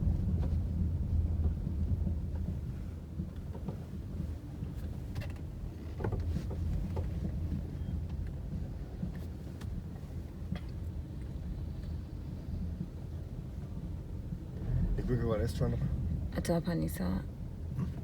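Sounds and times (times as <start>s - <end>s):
light knocks and rattles: 0.0s - 10.9s
car driving slowly from inside: 0.0s - 18.0s.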